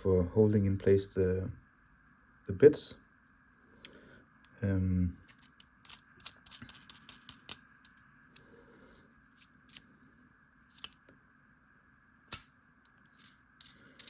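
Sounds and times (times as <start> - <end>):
faint steady hum: 0.0 - 14.0
metal multitool clicks and taps: 5.4 - 8.0.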